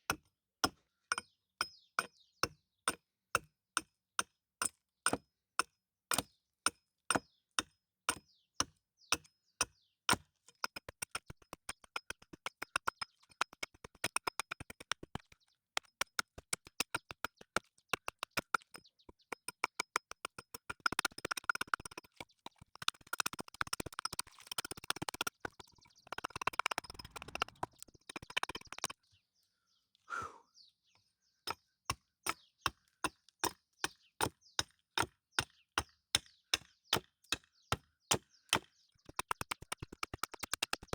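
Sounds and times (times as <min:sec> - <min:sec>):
hand tool striking wood: 0:10.1 - 0:29.0, 0:32.2 - 0:40.9
rough scraping: 0:21.4 - 0:29.0.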